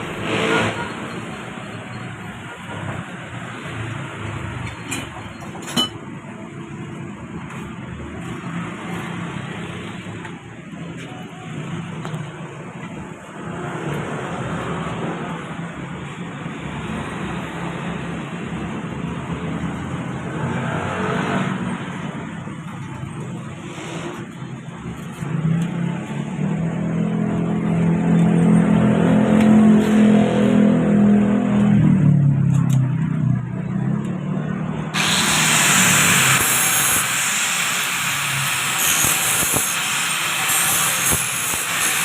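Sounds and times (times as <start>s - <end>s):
loud hiss: 35.0s - 42.0s.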